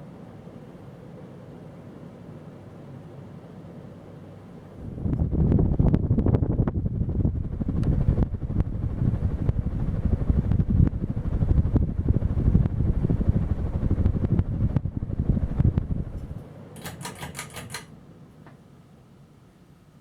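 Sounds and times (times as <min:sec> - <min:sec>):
fan airflow rumble on microphone: 0:00.0 - 0:20.0
sharp clicks: 0:16.2 - 0:17.9.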